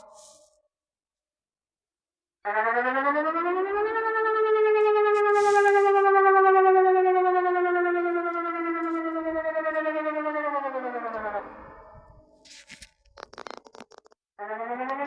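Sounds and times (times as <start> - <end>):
wavering warning siren: 0.0 - 0.6, 2.4 - 13.0, 14.4 - 15.0.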